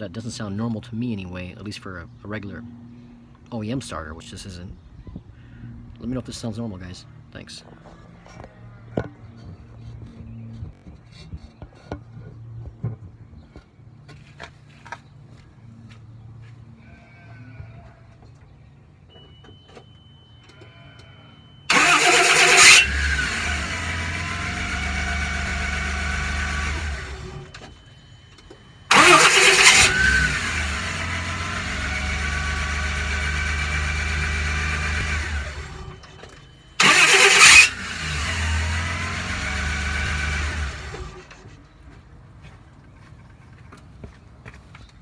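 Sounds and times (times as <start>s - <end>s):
car engine running: 21.7s - 27.6s, 28.9s - 36.0s, 36.8s - 41.3s
starter motor whirring: 21.7s - 27.8s, 28.9s - 41.5s.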